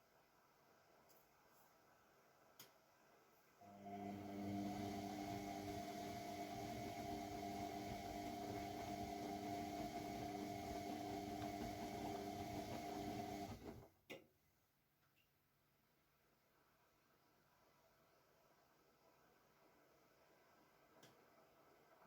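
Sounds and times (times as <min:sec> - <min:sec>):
click: 0:02.6 - 0:02.8
washing machine humming: 0:03.6 - 0:13.9.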